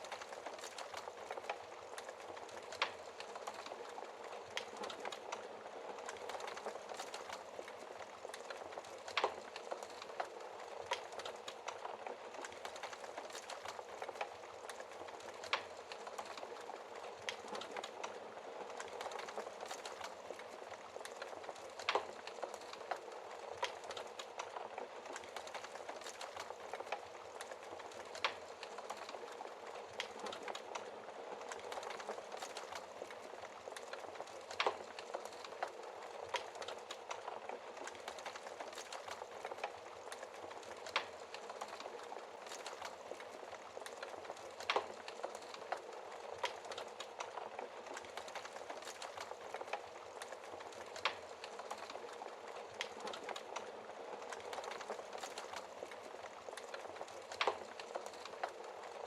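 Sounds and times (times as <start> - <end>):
wood fire crackling: 0.0 - 59.0
burning wood popping: 0.1 - 59.0.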